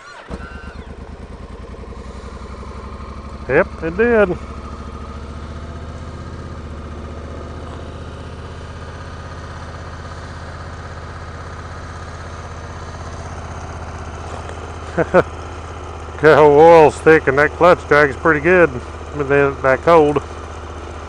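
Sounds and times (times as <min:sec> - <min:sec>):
motorcycle engine idling: 0:00.1 - 0:21.0.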